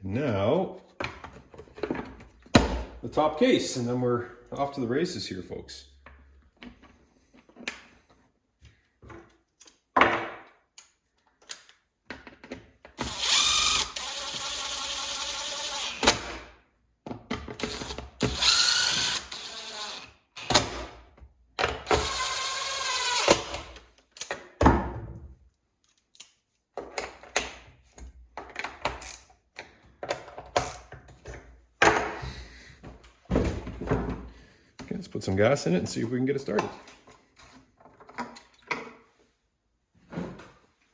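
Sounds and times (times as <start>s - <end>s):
clicks and knocks of handled parts: 9.0s - 10.0s, 10.7s - 13.0s, 25.5s - 32.2s
power drill driving screws: 13.0s - 16.4s, 17.6s - 20.9s, 21.8s - 23.8s.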